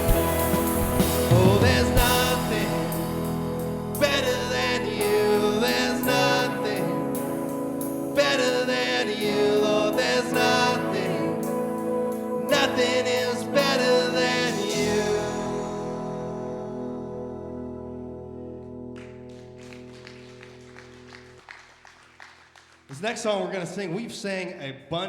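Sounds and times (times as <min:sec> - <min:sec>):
person singing: 0:00.0 - 0:17.0
band playing slow song: 0:00.0 - 0:21.4.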